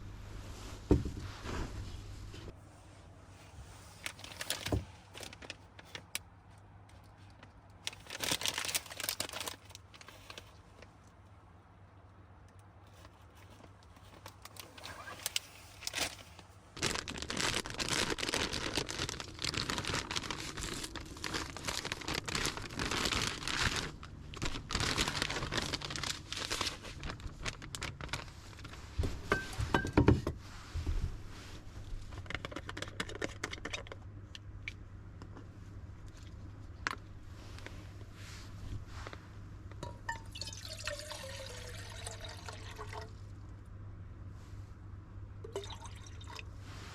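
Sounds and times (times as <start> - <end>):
plastic packaging crinkling: 3.9 - 6.2, 7.0 - 11.0, 12.9 - 29.8.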